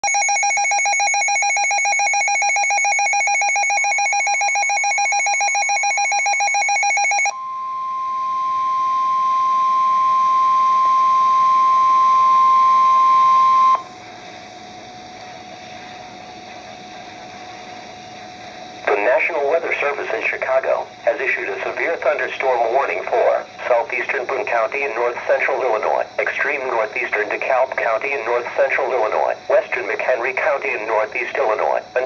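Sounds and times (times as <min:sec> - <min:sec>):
fast-pulsing electronic alarm: 0:00.0 - 0:14.0.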